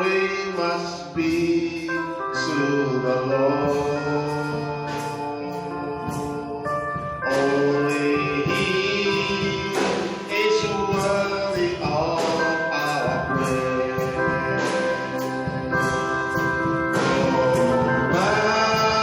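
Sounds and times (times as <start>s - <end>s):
percussion beat: 0.0s - 19.0s
person singing: 0.0s - 19.0s
sustained keyboard chords: 0.0s - 19.0s.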